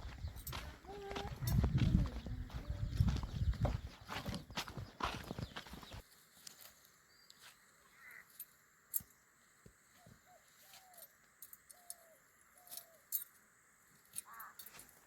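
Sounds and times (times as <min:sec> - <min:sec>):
faint bird calls: 0:07.2 - 0:08.4, 0:09.9 - 0:11.1, 0:14.2 - 0:14.9.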